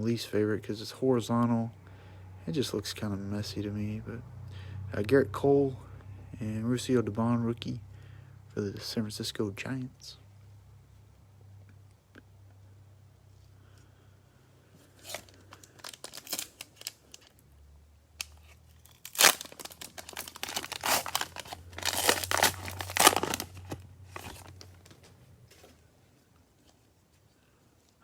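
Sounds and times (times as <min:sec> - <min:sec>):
cellophane wrapper crinkling: 0:15.0 - 0:17.5, 0:18.2 - 0:25.6.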